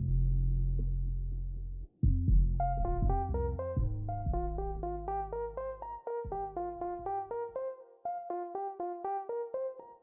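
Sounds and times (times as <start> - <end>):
low held bass: 0.0 - 7.1
keyboard melody: 2.6 - 10.0.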